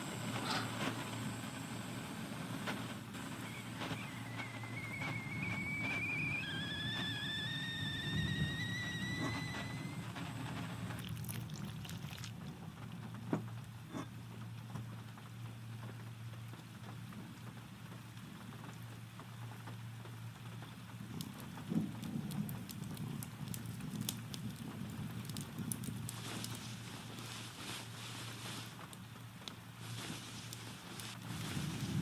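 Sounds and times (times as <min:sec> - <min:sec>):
steady rain: 0:00.0 - 0:32.0
wood fire crackling and popping: 0:02.6 - 0:32.0
rising whistling tone: 0:03.4 - 0:10.2.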